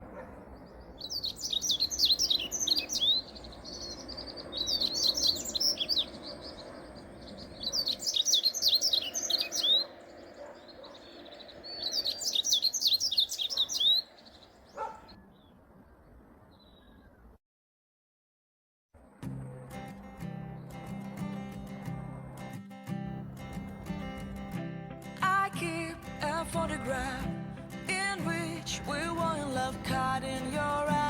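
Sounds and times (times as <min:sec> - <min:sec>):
lower bird call: 0:00.0 - 0:17.4
songbird chirping: 0:00.0 - 0:17.4.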